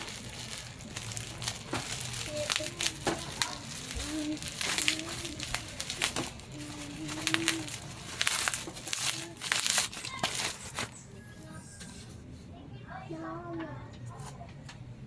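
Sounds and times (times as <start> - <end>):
sharp clicks and crackles: 0.0 - 11.0
crinkling and rustling: 0.0 - 12.2
faint voice: 0.0 - 14.8.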